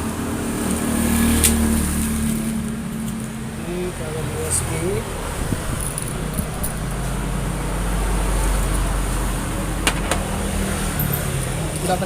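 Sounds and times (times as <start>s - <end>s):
low background rumble: 4.4s - 8.4s.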